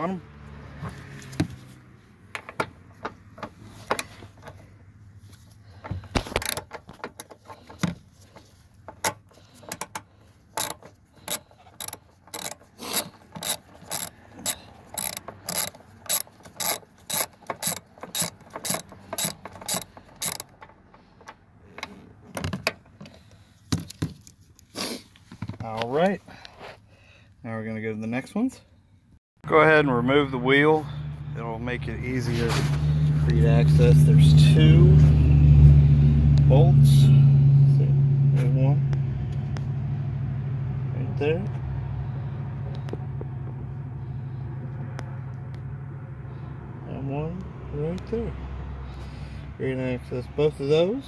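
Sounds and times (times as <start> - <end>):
socket ratchet clicking: 9.0 - 21.8.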